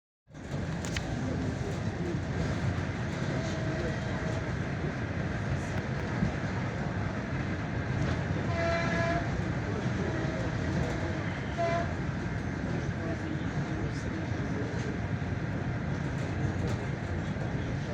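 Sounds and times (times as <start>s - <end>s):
train wheels rumbling on rails: 0.3s - 17.9s
train horn: 8.4s - 9.4s, 11.4s - 12.0s.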